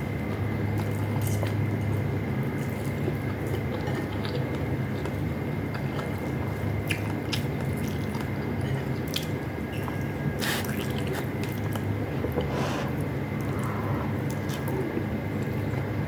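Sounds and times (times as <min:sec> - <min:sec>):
steady low hum: 0:00.0 - 0:16.0
person chewing: 0:03.7 - 0:15.8.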